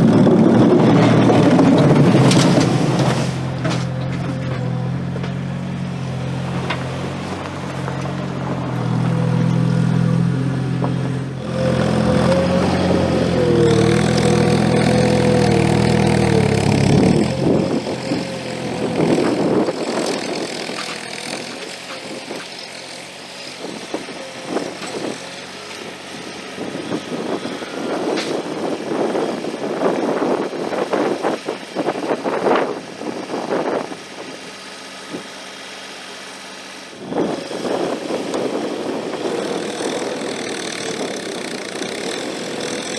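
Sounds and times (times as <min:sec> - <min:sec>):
scraping and knocking: 0:00.0 - 0:05.5, 0:10.8 - 0:22.1
skid steer engine running: 0:00.0 - 0:42.9.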